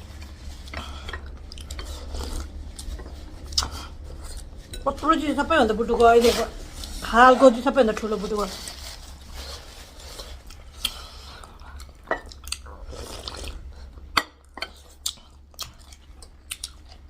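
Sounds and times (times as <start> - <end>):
chewing: 0.0 - 4.8, 9.4 - 17.0.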